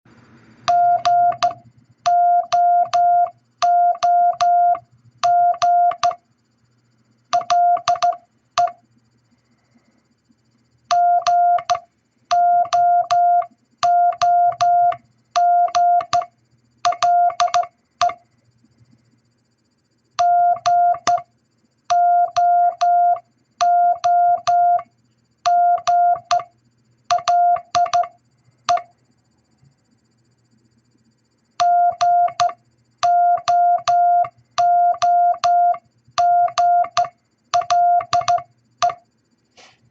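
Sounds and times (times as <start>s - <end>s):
morse code beeps: 0.7s - 6.2s, 7.3s - 8.8s, 10.9s - 16.3s, 16.9s - 18.2s, 20.2s - 21.2s, 21.9s - 24.9s, 25.5s - 26.5s, 27.1s - 28.1s, 28.7s - 28.9s, 31.6s - 39.0s.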